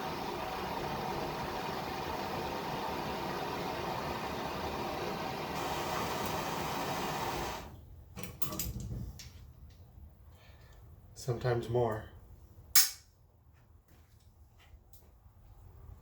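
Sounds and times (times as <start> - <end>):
heating tool running: 0.0 - 7.7.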